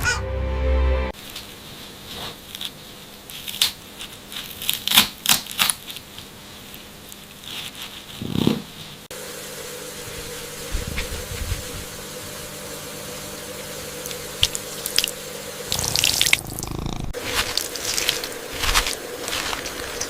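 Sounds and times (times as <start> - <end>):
water running at a sink: 9.1 - 16.8.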